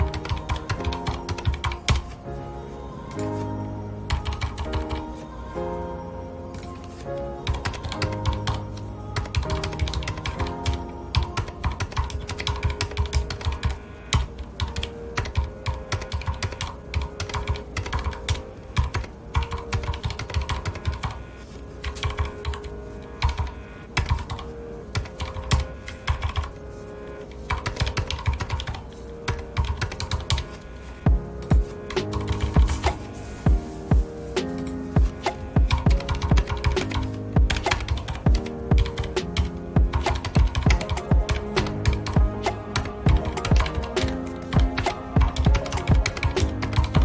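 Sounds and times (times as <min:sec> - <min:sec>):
typing on mechanical keyboard: 0:00.0 - 0:02.0, 0:09.2 - 0:21.2, 0:27.5 - 0:30.5
background music with held notes: 0:00.0 - 0:47.0.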